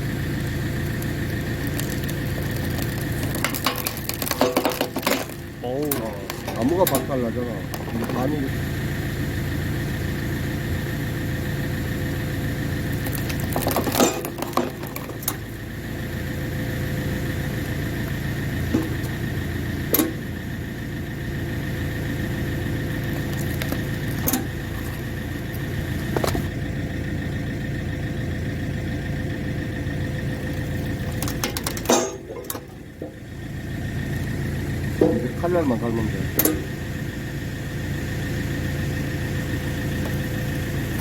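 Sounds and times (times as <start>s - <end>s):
sharp cracks of splitting logs: 0.0s - 8.6s, 12.8s - 16.0s, 21.9s - 26.5s, 30.4s - 35.7s
tractor engine running: 0.0s - 41.0s.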